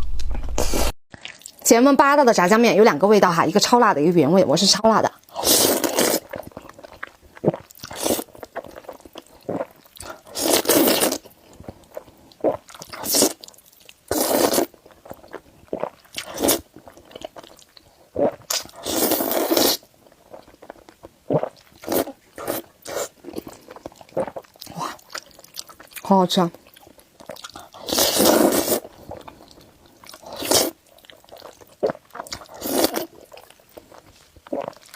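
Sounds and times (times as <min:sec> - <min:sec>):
wet chewing: 0:05.3 - 0:34.9
person slurping noodles: 0:05.4 - 0:06.5, 0:07.4 - 0:11.2, 0:12.4 - 0:13.4, 0:14.1 - 0:14.8, 0:15.7 - 0:16.7, 0:18.2 - 0:19.9, 0:21.3 - 0:25.1, 0:27.3 - 0:29.3, 0:30.2 - 0:33.2.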